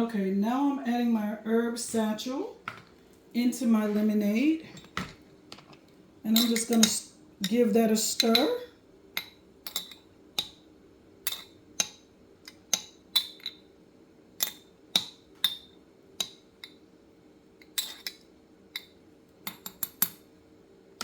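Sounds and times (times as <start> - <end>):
spoon clinking against container: 6.3 - 7.6.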